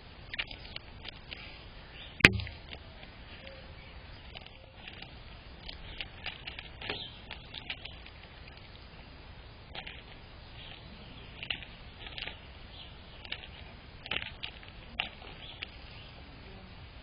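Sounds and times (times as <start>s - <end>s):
birds chirping: 0.0s - 17.0s
low background rumble: 0.0s - 17.0s.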